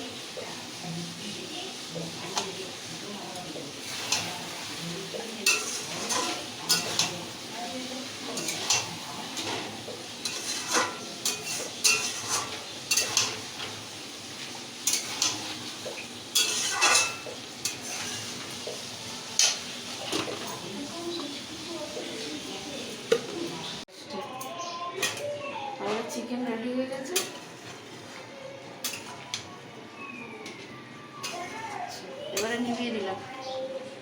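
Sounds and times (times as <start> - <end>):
food sizzling: 0.0 - 23.9, 24.5 - 30.4, 31.2 - 34.0
spatula scraping and knocking a pan: 8.3 - 13.8, 14.8 - 20.4.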